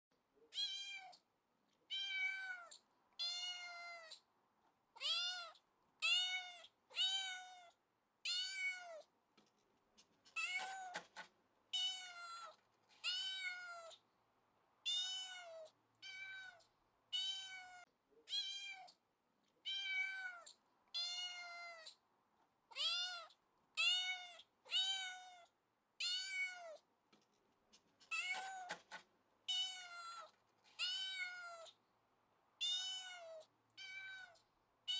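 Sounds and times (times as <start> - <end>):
cat meowing: 0.5 - 1.2, 1.9 - 4.2, 5.0 - 9.1, 11.8 - 14.0, 14.8 - 19.0, 19.6 - 22.0, 22.7 - 26.8, 29.5 - 31.8, 32.6 - 34.9.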